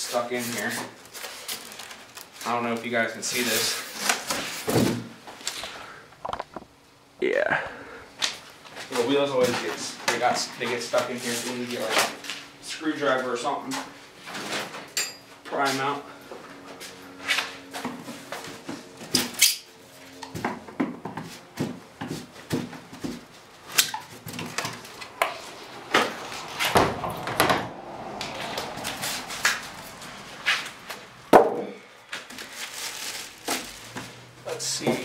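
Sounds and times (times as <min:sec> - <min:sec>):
cardboard packaging handling: 0:00.4 - 0:04.9, 0:32.0 - 0:35.0.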